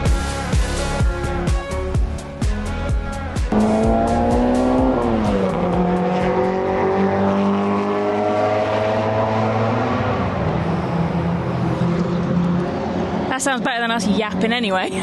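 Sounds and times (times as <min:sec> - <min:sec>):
racing car engine at full throttle: 0:03.5 - 0:15.0.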